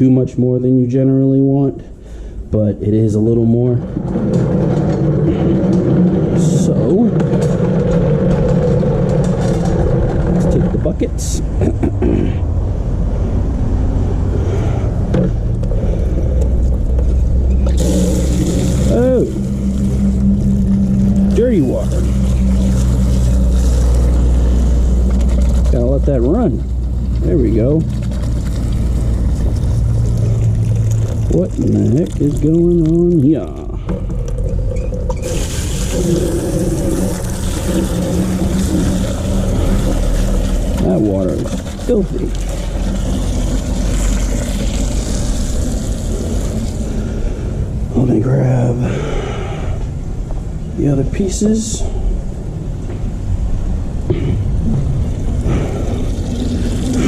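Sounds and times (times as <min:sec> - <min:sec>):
low rumble: 0:00.0 - 0:57.0
steady low hum: 0:00.0 - 0:57.0
water running into a bucket: 0:17.7 - 0:47.2, 0:55.4 - 0:57.0.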